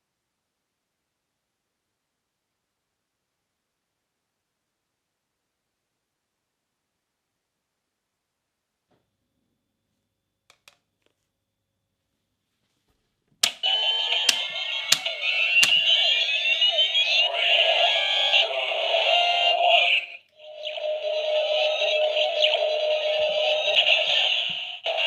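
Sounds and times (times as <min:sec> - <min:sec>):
toy switch clicks: 0:13.4 - 0:16.9
electronic toy sound effects: 0:13.4 - 0:25.0.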